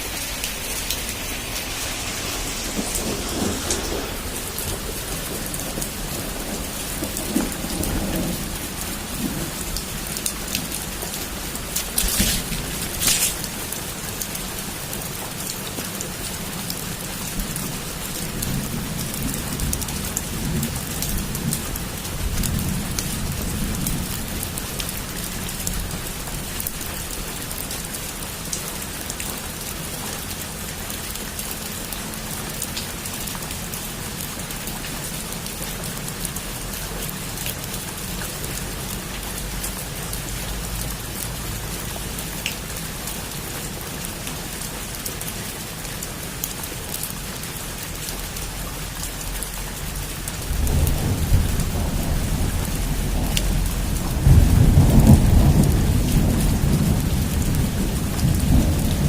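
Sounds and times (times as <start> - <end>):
distant thunder rumble: 0.0 - 14.8, 50.4 - 59.0
heavy rain on a rooftop: 0.0 - 59.0.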